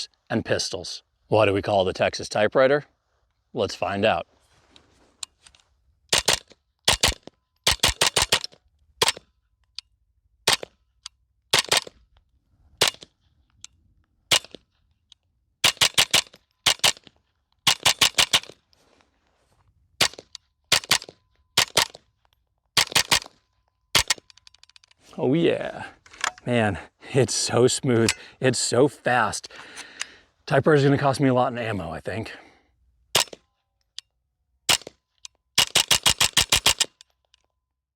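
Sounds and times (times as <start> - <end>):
rifle firing rapid shots: 6.1 - 9.2, 10.5 - 10.7, 11.5 - 11.9, 12.8 - 13.0, 14.3 - 14.6, 15.6 - 17.1, 17.7 - 18.6, 20.0 - 22.0, 22.8 - 23.4, 24.0 - 24.2, 33.2 - 33.4, 34.7 - 35.0, 35.6 - 37.0.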